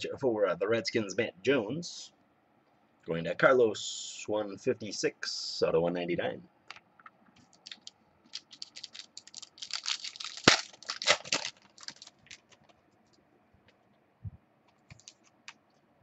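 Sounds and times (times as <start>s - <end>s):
trading cards clicking and crackling: 6.7s - 13.8s, 14.6s - 15.8s.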